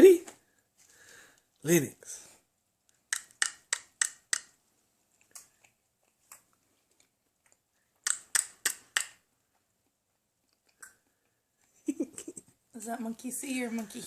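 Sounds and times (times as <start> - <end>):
person clicking: 2.9 - 4.6, 7.5 - 9.2.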